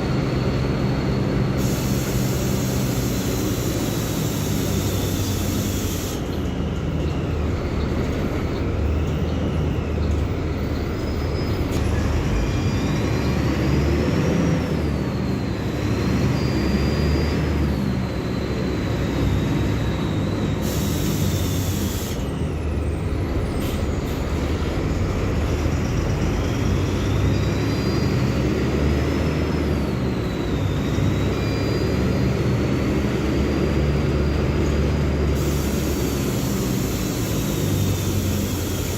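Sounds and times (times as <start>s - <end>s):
bus diesel engine whining: 0.0s - 38.9s
air hiss: 1.6s - 6.4s, 20.6s - 22.3s, 35.4s - 38.9s.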